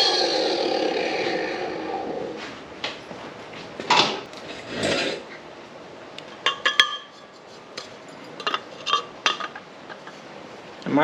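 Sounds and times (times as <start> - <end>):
metal tubing scraping: 4.4 - 5.3.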